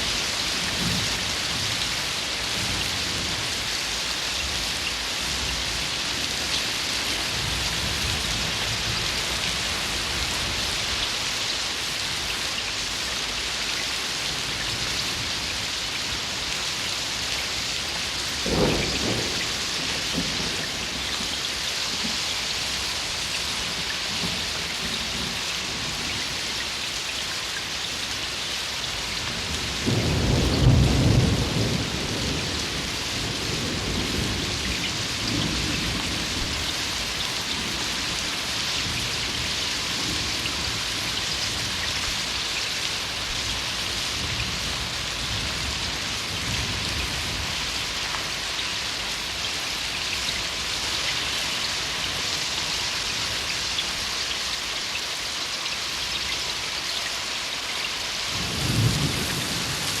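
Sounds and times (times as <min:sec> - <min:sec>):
heavy rainfall: 0:00.0 - 1:00.0
low thunder rumbles: 0:18.0 - 0:21.5, 0:29.4 - 0:41.8, 0:58.3 - 1:00.0.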